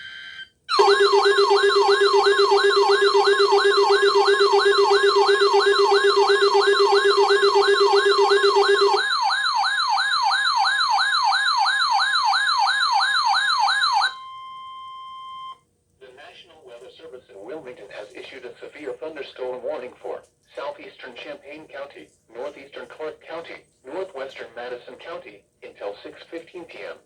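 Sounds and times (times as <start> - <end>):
steady high alert tone: 0.0 - 9.4
siren-like alarm yelp: 0.0 - 15.6.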